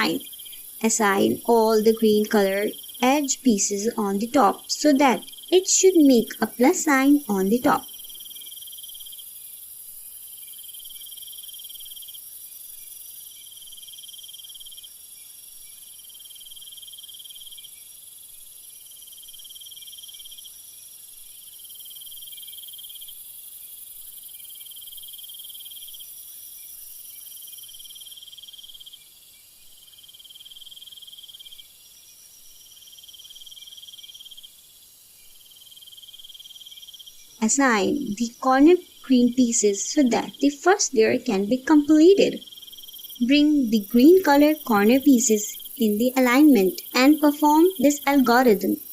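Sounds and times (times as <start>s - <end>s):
steady high hiss: 0.0s - 13.5s, 31.5s - 48.9s
crickets chirping: 0.0s - 48.9s.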